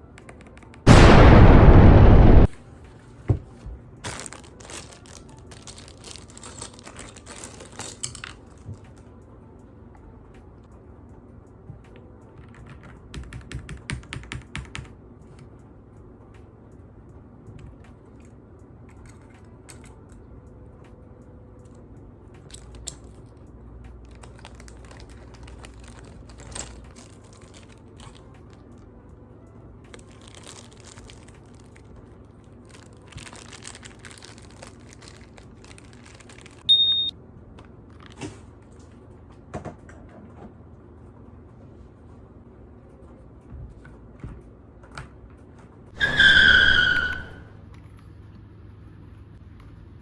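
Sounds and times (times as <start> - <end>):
packaging rustling and crinkling: 4.1 - 8.3, 24.2 - 28.2, 29.9 - 31.9, 32.6 - 36.6
short high beep: 36.7 - 37.1.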